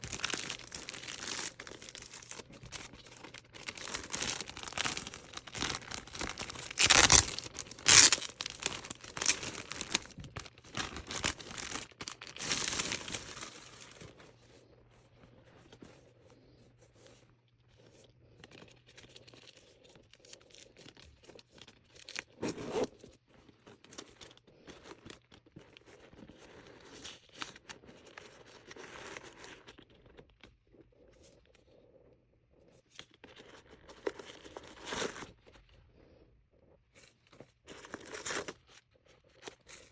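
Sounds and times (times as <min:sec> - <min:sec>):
packaging torn and crinkled: 0:00.0 - 0:14.1.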